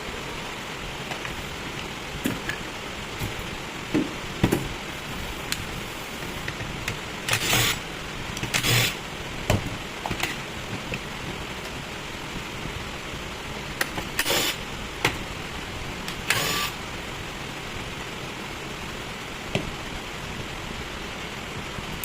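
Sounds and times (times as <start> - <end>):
small electric motor whirring: 7.3 - 7.8, 8.5 - 9.0, 16.3 - 16.8.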